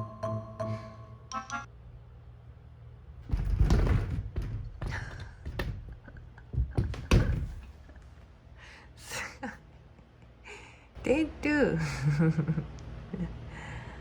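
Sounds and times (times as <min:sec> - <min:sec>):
dull thumps and knocks: 0:03.2 - 0:08.1.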